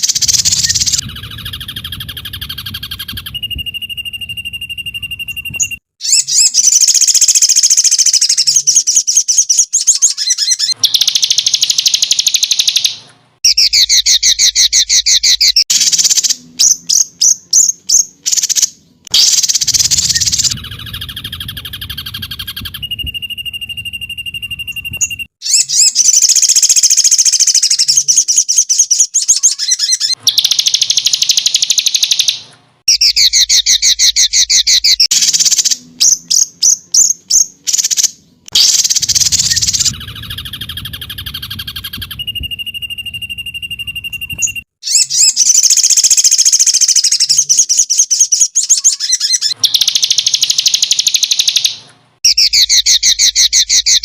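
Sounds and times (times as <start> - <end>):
bird whistle: 0.0 - 54.0
songbird trills and chips: 0.0 - 54.0.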